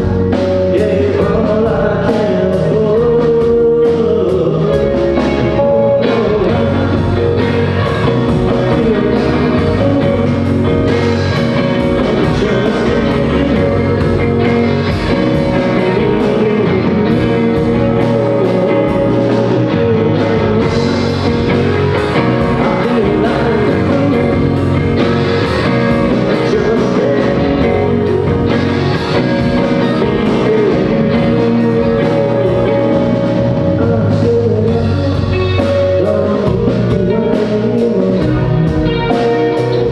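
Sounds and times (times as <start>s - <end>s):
drum kit: 0.0s - 39.9s
guitar: 0.0s - 39.9s
person singing: 0.0s - 39.9s
rock band playing: 0.0s - 39.9s.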